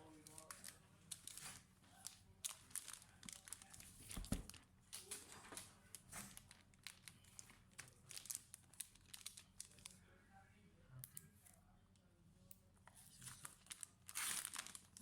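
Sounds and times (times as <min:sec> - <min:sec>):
packaging rustling: 0:00.2 - 0:04.6, 0:06.2 - 0:09.8, 0:13.2 - 0:15.0.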